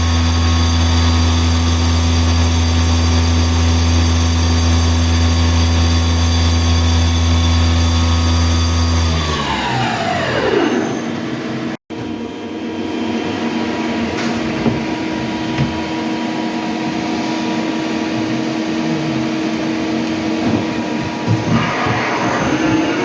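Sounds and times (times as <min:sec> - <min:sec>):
lathe mechanical hum and whine: 0:00.0 - 0:23.0.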